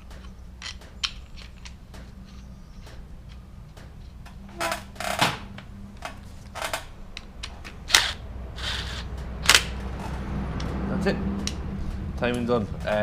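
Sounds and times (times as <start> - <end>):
metal tools clicking and knocking: 0.0 - 5.0
low steady hum: 0.0 - 13.0.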